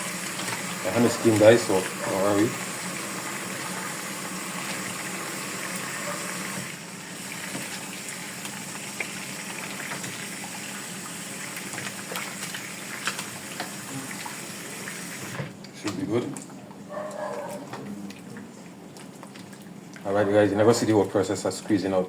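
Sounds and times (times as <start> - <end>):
water running into container: 0.0 - 21.5
small splashes: 7.3 - 15.2.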